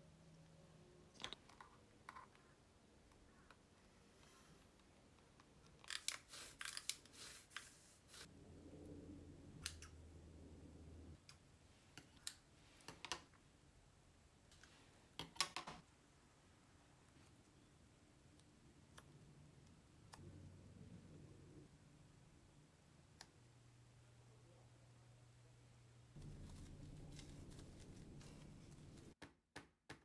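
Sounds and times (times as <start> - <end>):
faint low hum: 8.3 - 11.4, 17.0 - 29.2.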